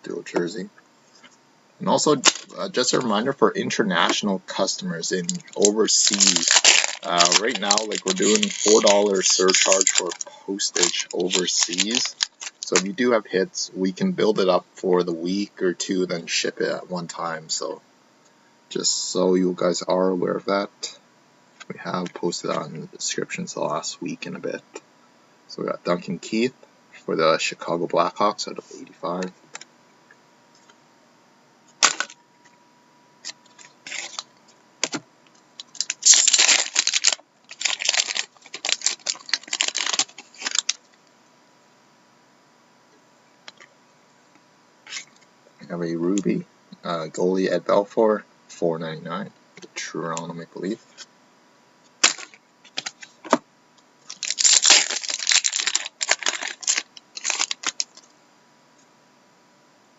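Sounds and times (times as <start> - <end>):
foil wrapper crinkling: 2.0 - 3.2, 5.1 - 13.0, 31.8 - 32.2, 33.2 - 35.0, 35.6 - 40.9, 52.0 - 53.2, 54.0 - 58.1
cards rustling and scraping: 5.2 - 12.9, 33.2 - 35.0, 52.0 - 53.4, 54.1 - 58.1.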